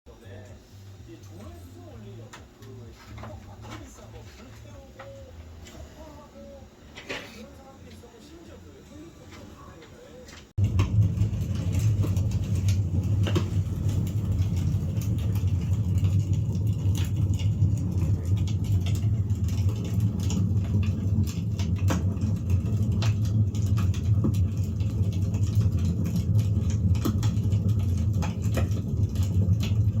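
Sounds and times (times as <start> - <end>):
wood crackling and popping: 9.2 - 30.0
bonfire roaring: 10.6 - 30.0.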